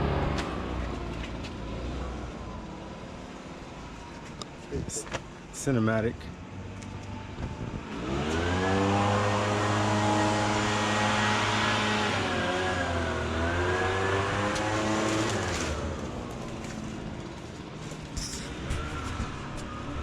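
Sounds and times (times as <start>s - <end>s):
engine running: 6.4s - 20.0s.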